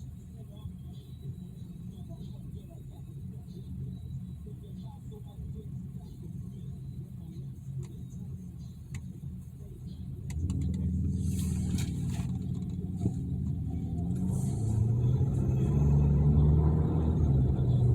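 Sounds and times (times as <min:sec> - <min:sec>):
motorcycle engine rumbling: 0:10.3 - 0:17.9.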